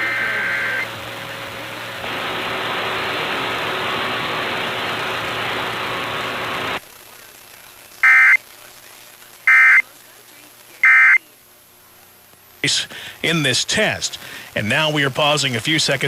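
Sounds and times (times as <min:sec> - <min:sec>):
faint steady tones: 0:00.0 - 0:02.3
broadcast static hiss: 0:00.0 - 0:16.0
digital data tones: 0:08.0 - 0:08.4, 0:09.5 - 0:09.8, 0:10.8 - 0:11.2.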